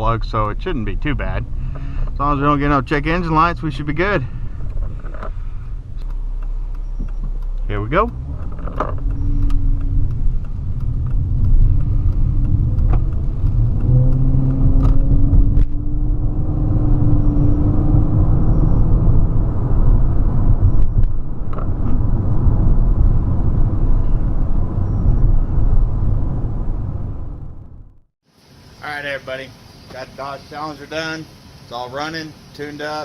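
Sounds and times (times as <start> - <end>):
car engine and road rumble: 0.0 - 33.0.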